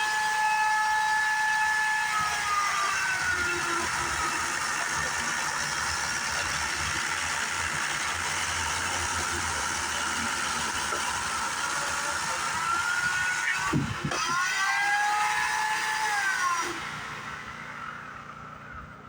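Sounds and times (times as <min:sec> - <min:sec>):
electric chainsaw motor whining: 0:00.0 - 0:19.0
generator engine running: 0:03.2 - 0:19.0.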